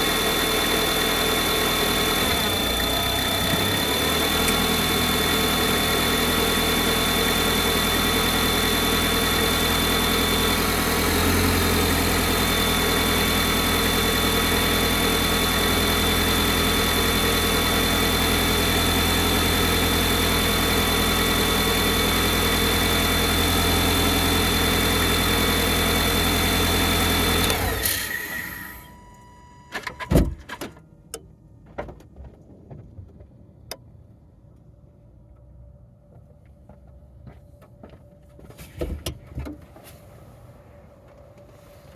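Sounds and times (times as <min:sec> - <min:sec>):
vehicle engine idling: 0:00.0 - 0:29.1.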